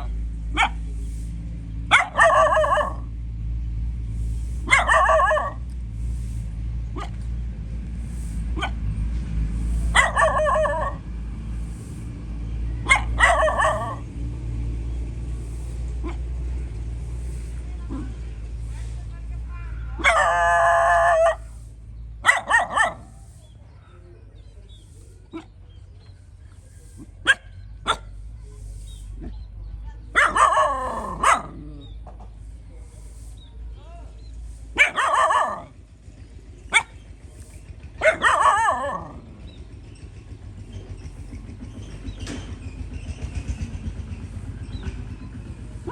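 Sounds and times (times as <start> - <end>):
dog barking and yelping: 0.0 - 0.9, 1.9 - 3.1, 4.6 - 5.7, 7.0 - 7.2, 8.6 - 8.8, 9.9 - 11.1, 12.8 - 14.1, 20.0 - 21.6, 22.2 - 23.3, 27.2 - 28.2, 30.1 - 31.9, 34.7 - 35.8, 36.7 - 37.0, 38.0 - 39.3
steady low rumble: 0.0 - 45.9.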